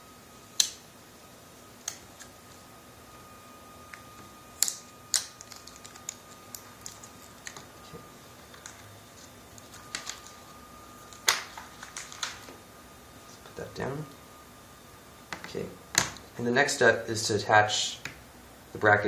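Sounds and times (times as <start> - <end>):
protective film peeling: 1.8 - 2.7, 3.8 - 12.6.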